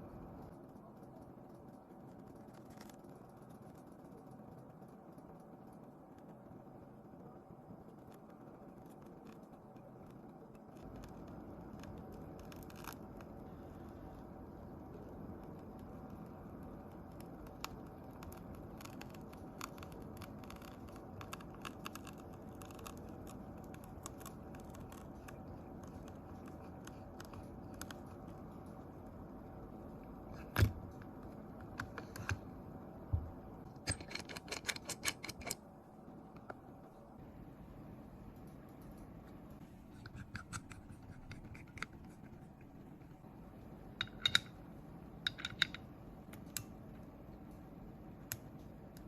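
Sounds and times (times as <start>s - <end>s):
steady low hum: 0.0s - 49.0s
small tools clicking and tapping: 33.7s - 35.6s, 44.0s - 44.6s, 45.2s - 46.7s.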